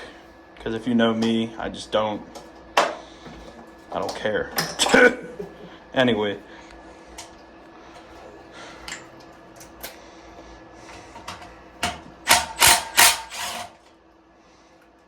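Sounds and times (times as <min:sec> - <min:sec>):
hand tools clicking and clinking: 0:11.2 - 0:13.7
loud short metallic strokes: 0:12.3 - 0:13.8.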